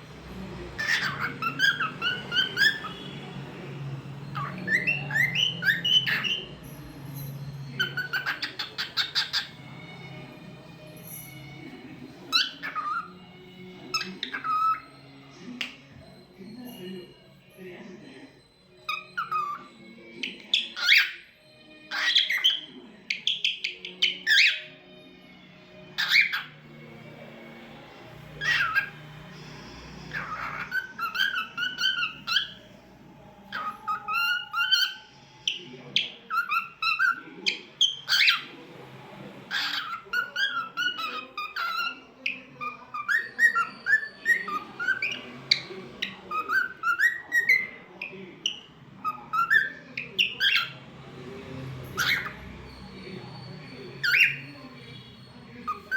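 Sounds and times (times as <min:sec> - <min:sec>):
cockatiel squawks: 0:00.8 - 0:03.2, 0:04.2 - 0:06.4, 0:07.7 - 0:09.6, 0:12.3 - 0:13.2, 0:13.9 - 0:14.9, 0:18.9 - 0:21.3, 0:21.9 - 0:22.6, 0:23.2 - 0:24.7, 0:26.0 - 0:26.6, 0:28.4 - 0:32.7, 0:33.5 - 0:38.5, 0:39.5 - 0:50.8, 0:51.9 - 0:52.4, 0:54.0 - 0:54.4
cockatiel whistling and chirping: 0:00.8 - 0:11.5, 0:12.3 - 0:13.2, 0:13.9 - 0:14.9, 0:18.8 - 0:24.7, 0:26.0 - 0:26.6, 0:28.3 - 0:32.8, 0:33.4 - 0:38.6, 0:39.5 - 0:50.8, 0:51.9 - 0:55.9.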